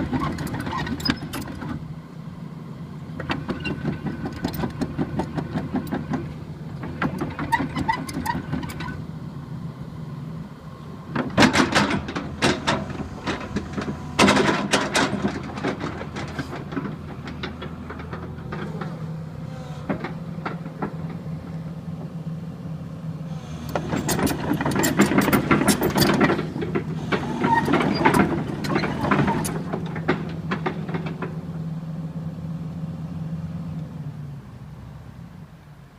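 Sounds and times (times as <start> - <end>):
excavator clattering: 0.0 - 1.9, 3.1 - 9.2, 10.8 - 22.3, 23.4 - 32.3
excavator diesel engine running: 0.0 - 35.9.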